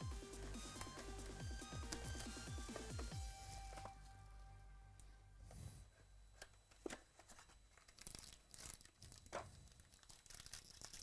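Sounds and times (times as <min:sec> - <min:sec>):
packaging crinkling and tearing: 0:07.3 - 0:11.0.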